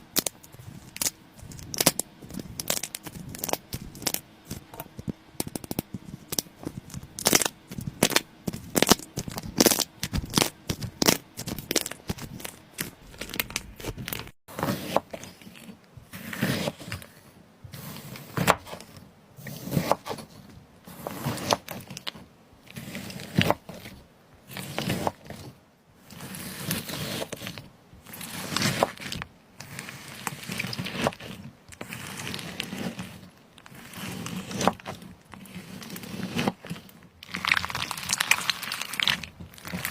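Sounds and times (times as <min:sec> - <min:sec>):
slime squishing: 0:00.0 - 0:15.4, 0:21.0 - 0:39.9
slime crackling and popping: 0:00.1 - 0:14.4, 0:37.2 - 0:39.9.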